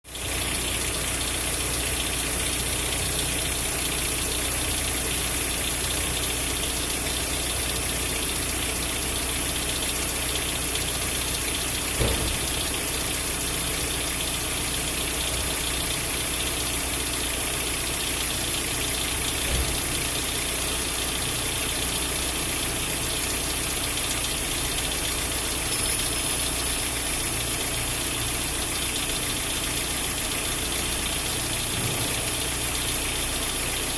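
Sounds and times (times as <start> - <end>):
car engine idling: 0.1 - 33.9
engine knocks: 0.3 - 33.9.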